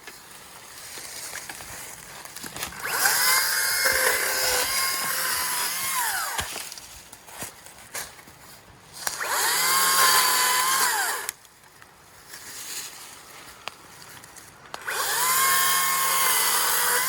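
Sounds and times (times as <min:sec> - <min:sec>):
chainsaw motor whine: 0:02.6 - 0:06.4, 0:09.1 - 0:11.3, 0:14.8 - 0:17.0.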